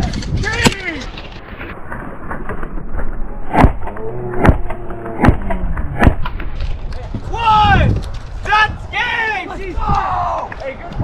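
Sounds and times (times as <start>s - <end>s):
airsoft gunshots: 3.5s - 6.3s.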